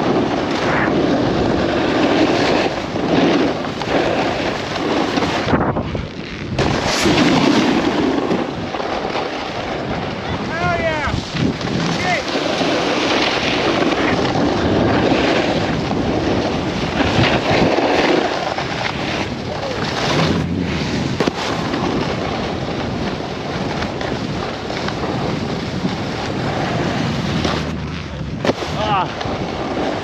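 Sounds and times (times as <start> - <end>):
snowboard scraping over snow: 0.0 - 30.0
wind rushing over microphone: 0.0 - 30.0.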